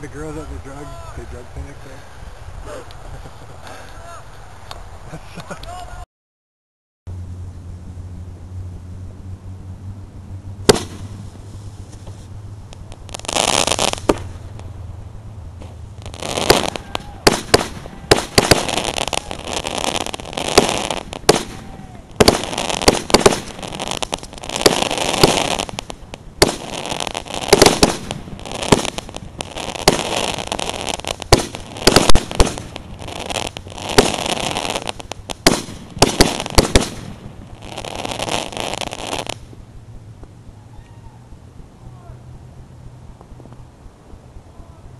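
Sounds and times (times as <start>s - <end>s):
firework cracks and pops: 10.7s - 11.2s, 11.9s - 14.7s, 15.6s - 39.6s
firework hissing bursts: 10.7s - 14.6s, 15.8s - 39.5s.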